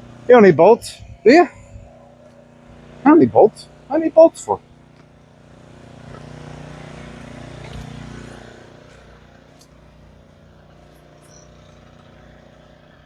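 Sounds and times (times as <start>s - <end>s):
engine humming: 0.0s - 13.0s.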